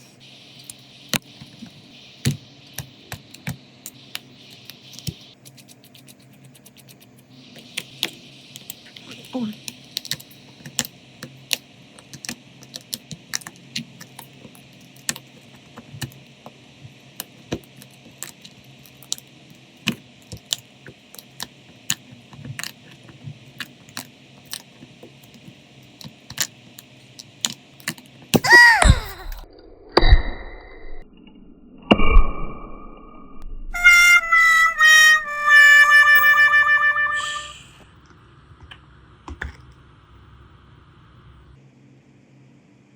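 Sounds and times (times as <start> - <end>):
faint steady hum: 0.0 - 29.6, 33.4 - 42.9
falling pitch sound: 33.8 - 37.8.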